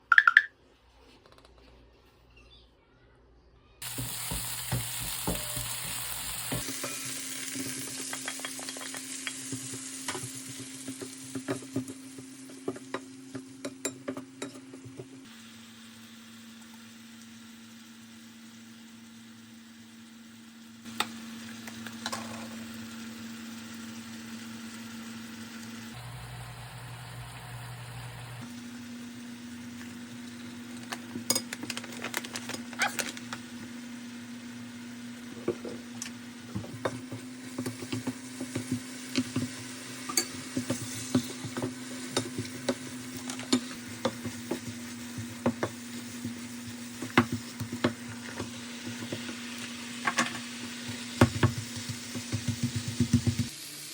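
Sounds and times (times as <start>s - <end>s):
food frying in a pan: 3.8s - 53.9s.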